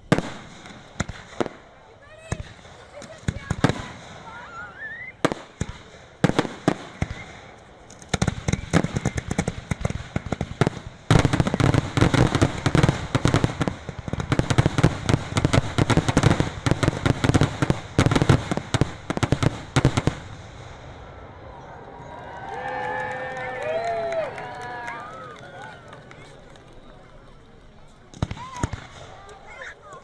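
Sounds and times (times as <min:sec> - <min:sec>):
fireworks bangs and crackling: 0:00.0 - 0:30.0
firework whistle: 0:04.2 - 0:05.3.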